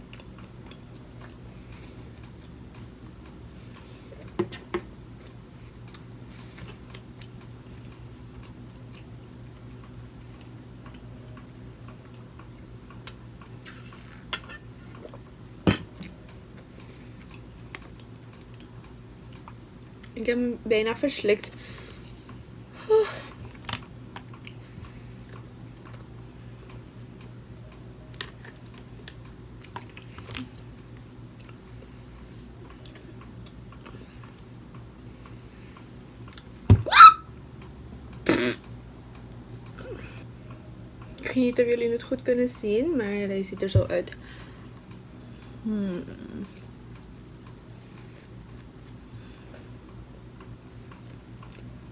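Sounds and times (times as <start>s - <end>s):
quiet chewing: 16.0s - 20.2s, 23.4s - 36.6s, 44.3s - 51.8s.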